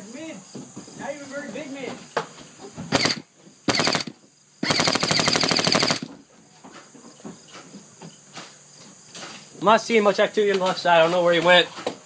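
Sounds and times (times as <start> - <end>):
airsoft gun automatic fire: 2.9 - 6.1.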